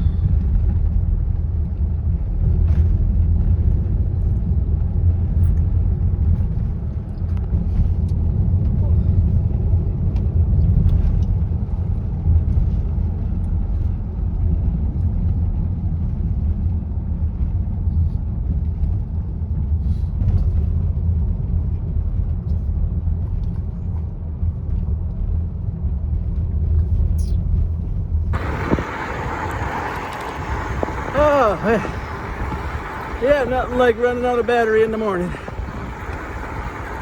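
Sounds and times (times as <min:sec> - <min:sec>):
road and wind rumble: 0:00.0 - 0:37.0
bright hiss: 0:28.4 - 0:37.0.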